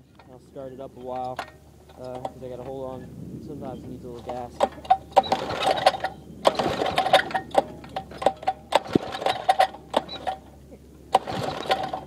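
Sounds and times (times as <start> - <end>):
pull-starter rope whirring: 3.8 - 12.0
starter clicking: 4.2 - 10.5, 11.1 - 12.0
engine turning over: 4.2 - 12.0.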